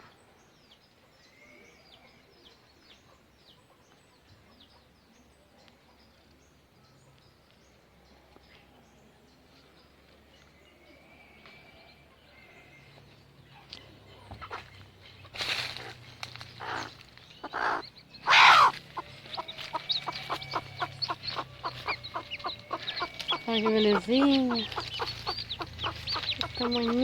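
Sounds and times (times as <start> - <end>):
chicks peeping: 13.8 - 27.0
chicken harsh bursts: 16.6 - 18.8.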